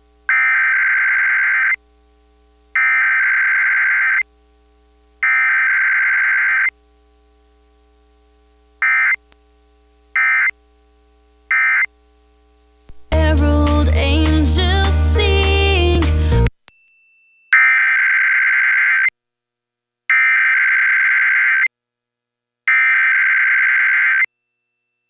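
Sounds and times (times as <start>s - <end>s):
warbling data bursts: 0.3s - 1.8s, 2.8s - 4.3s, 5.2s - 6.8s, 8.8s - 9.2s, 10.2s - 10.6s, 11.5s - 11.9s
short electronic blips: 2.8s - 4.3s, 5.2s - 6.7s, 8.8s - 9.2s, 10.2s - 10.6s, 11.5s - 11.9s.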